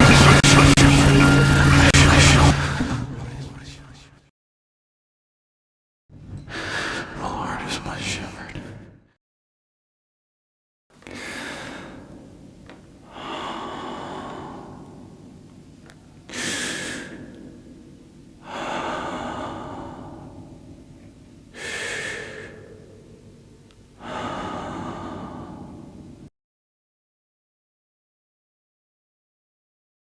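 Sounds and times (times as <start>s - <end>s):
person breathing heavily: 6.5s - 7.2s, 11.0s - 26.3s.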